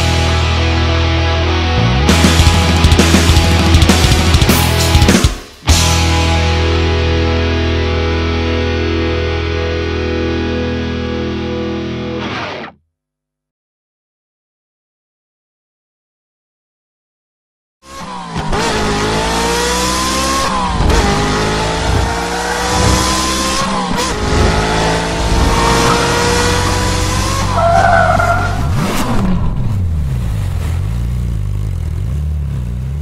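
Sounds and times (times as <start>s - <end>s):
car engine accelerating hard: 17.8s - 33.0s.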